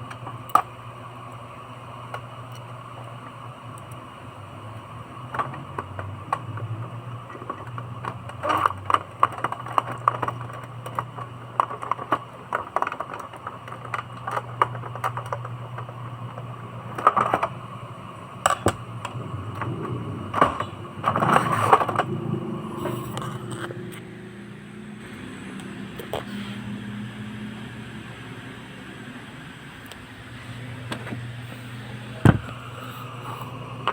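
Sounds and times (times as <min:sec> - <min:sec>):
steady low hum: 0:00.0 - 0:33.9
plastic parts clicking and knocking: 0:05.2 - 0:17.6, 0:18.4 - 0:22.1, 0:32.2 - 0:32.8.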